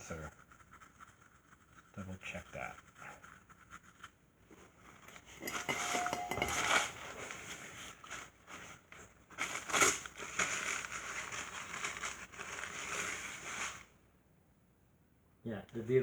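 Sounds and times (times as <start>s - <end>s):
crinkling rustling handling noise: 4.4s - 14.0s.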